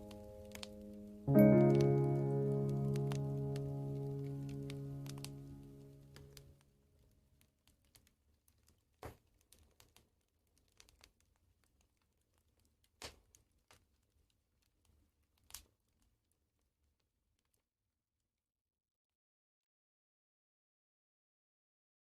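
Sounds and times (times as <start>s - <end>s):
piano notes: 0.0s - 6.6s
wood fire crackling: 0.0s - 17.1s.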